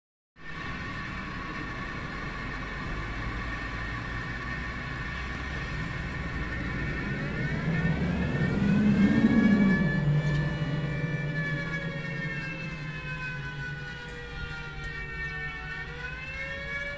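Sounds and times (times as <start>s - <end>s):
low hum: 0.5s - 16.9s
warning siren winding up: 5.3s - 16.9s.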